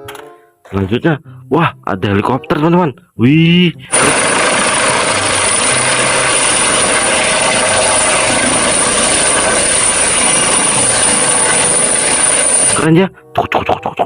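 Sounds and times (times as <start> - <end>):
helicopter rotor and engine: 3.9 - 12.8.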